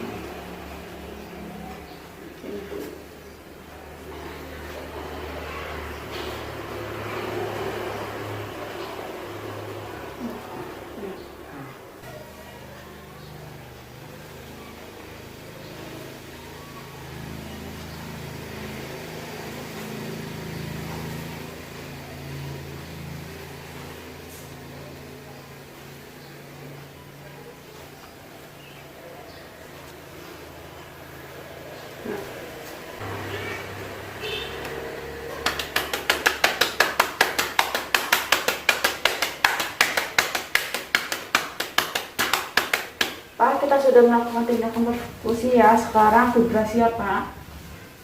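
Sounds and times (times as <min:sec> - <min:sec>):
cupped hands clapping on chest: 0:35.3 - 0:43.3.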